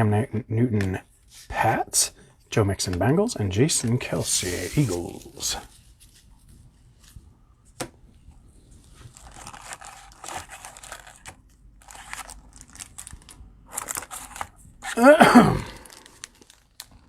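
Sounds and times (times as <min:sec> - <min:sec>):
cellophane wrapper crinkling and tearing: 0:08.8 - 0:15.0, 0:15.6 - 0:17.0.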